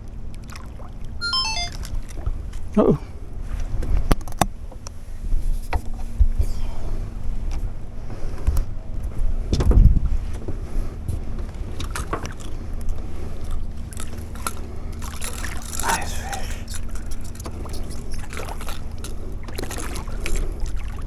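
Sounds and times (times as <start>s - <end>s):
wind and water rumble: 0.0s - 21.0s
boat knocks and splashes: 7.3s - 16.0s, 16.7s - 21.0s.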